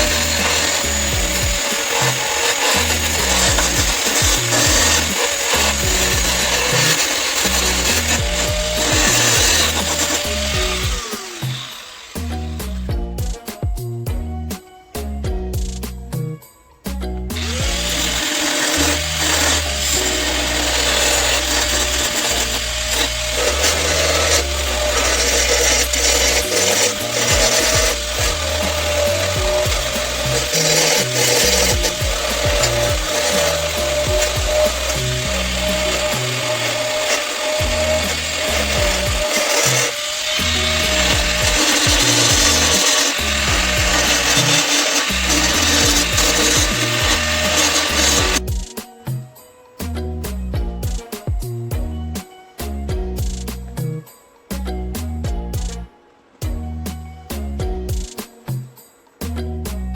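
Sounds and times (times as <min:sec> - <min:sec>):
power tool motor whine: 0:00.0 - 0:12.9, 0:17.4 - 0:48.7
rough rasping on sheet metal: 0:00.0 - 0:12.9, 0:17.4 - 0:48.9.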